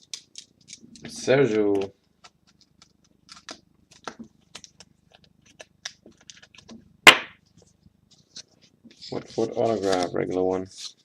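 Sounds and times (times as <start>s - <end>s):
cards clicking and rustling: 0.0s - 6.8s.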